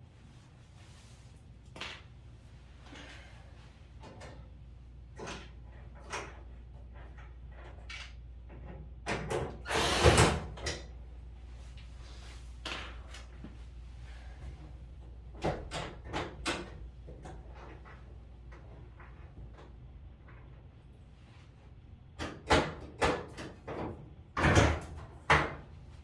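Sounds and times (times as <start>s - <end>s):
clothes dryer parts clicking and knocking: 15.3s - 19.8s.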